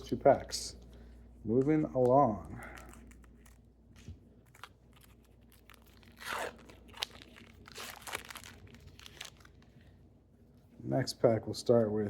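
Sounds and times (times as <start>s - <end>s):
foil wrapper tearing and crinkling: 4.4s - 9.8s.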